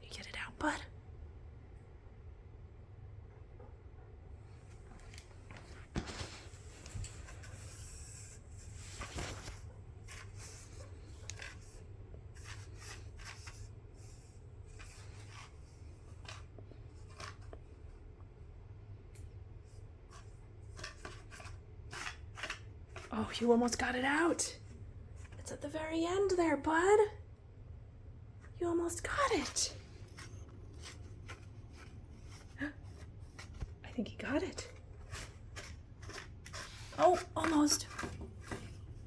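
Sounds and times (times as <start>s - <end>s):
cardboard roll scraping and rubbing: 5.6s - 11.6s.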